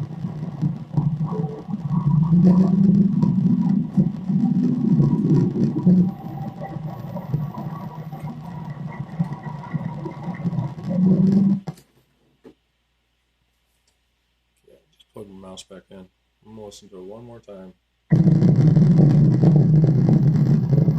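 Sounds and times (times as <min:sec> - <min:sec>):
faint high tone: 0:05.8 - 0:08.7.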